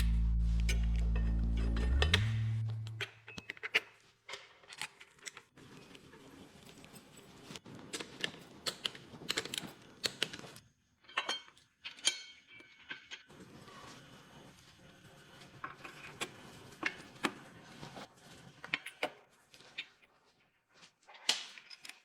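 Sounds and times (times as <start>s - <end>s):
low hum: 0.0s - 3.4s.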